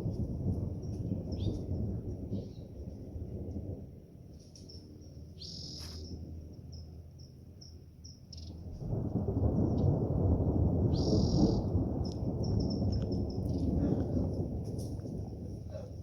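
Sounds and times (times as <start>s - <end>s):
high bird chirps: 5.4s - 6.1s
low rumble: 8.5s - 16.0s.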